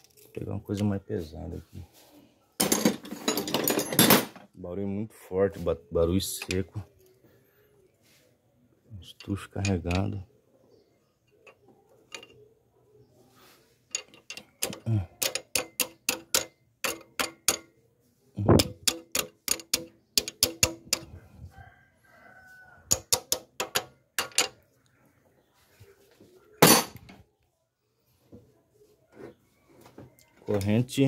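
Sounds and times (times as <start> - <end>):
tool tapping on metal: 9.2 - 10.2, 13.9 - 17.7, 18.5 - 21.1, 22.9 - 24.6.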